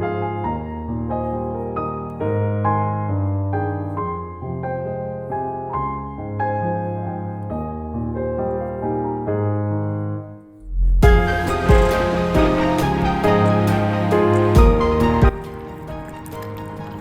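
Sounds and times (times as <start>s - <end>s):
slow piano music: 0.0s - 17.0s
music track with a beat: 11.0s - 16.4s.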